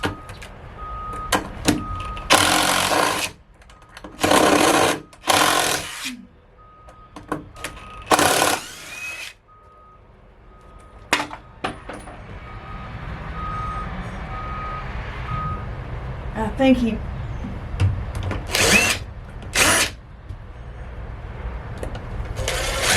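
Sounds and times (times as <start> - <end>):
vehicle reversing beeps: 0.0 - 2.3, 3.7 - 4.0, 6.1 - 8.1, 9.4 - 15.7
power tool bursts: 2.3 - 3.4, 4.2 - 6.2, 8.1 - 9.4, 18.5 - 19.0, 19.6 - 20.0, 22.4 - 22.9.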